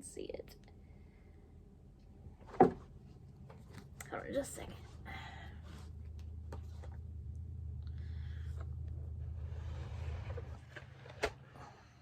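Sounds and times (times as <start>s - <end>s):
low motor hum: 5.1s - 11.8s.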